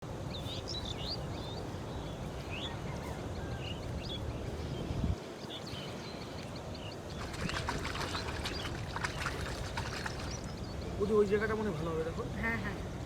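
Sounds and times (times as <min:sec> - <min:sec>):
small birds chirping: 0:00.1 - 0:12.8.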